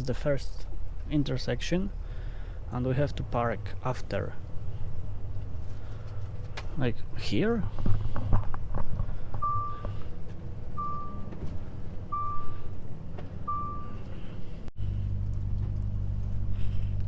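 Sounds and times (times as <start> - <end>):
diesel engine rumble: 0.0 - 17.0
truck reversing alarm beeping: 9.4 - 10.1, 10.7 - 11.4, 12.1 - 12.8, 13.4 - 14.4.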